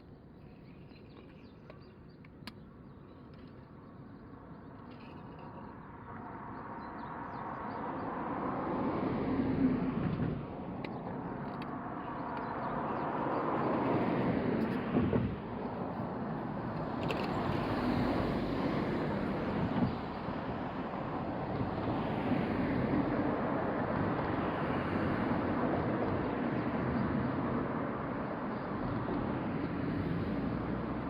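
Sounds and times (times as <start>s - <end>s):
vehicles passing: 7.2s - 31.0s.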